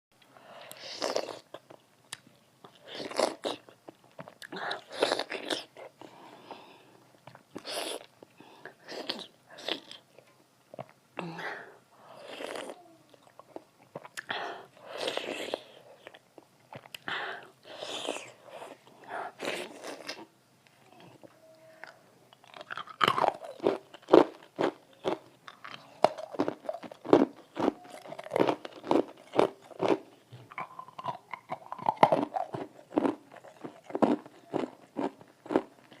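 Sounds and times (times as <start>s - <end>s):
crunchy chewing of food: 12.2s - 20.3s, 21.2s - 36.0s.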